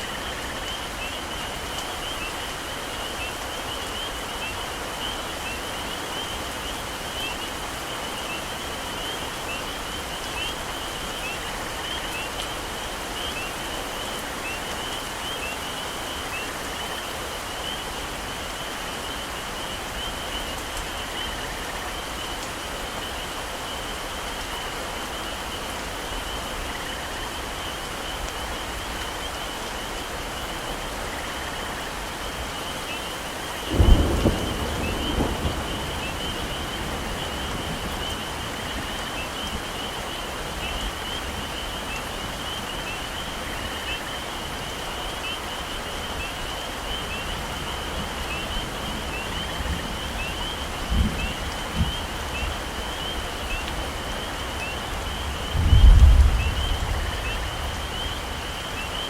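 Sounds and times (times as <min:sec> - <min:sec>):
heavy rain: 0:00.0 - 0:59.0
thunderclap: 0:33.7 - 0:38.8, 0:55.5 - 0:57.2.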